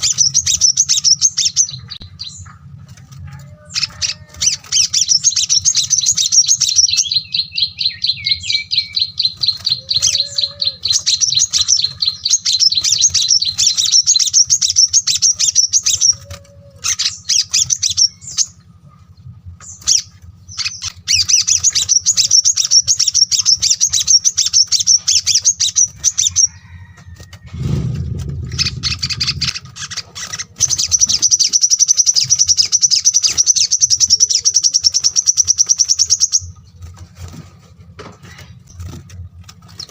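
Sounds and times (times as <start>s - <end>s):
songbirds twittering trills: 0.0s - 39.9s
low rumble: 25.8s - 32.7s.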